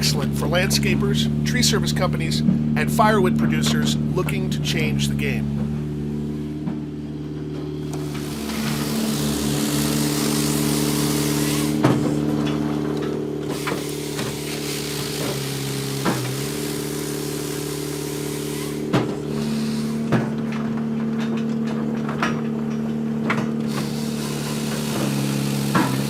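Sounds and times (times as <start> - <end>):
diesel engine running under load: 0.0 - 26.0
sharp knocks of logs: 13.5 - 19.3, 25.7 - 26.0.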